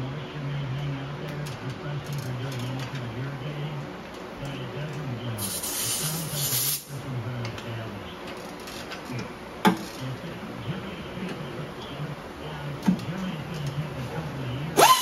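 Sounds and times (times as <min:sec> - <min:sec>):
spray hissing: 0:05.4 - 0:06.9.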